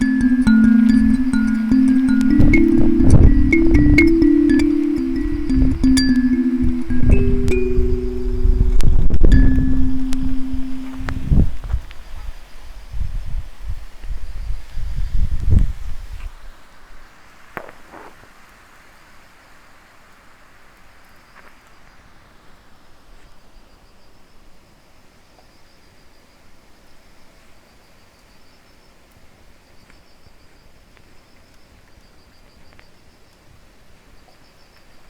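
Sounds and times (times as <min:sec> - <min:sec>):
crickets chirping: 0:00.0 - 0:11.8.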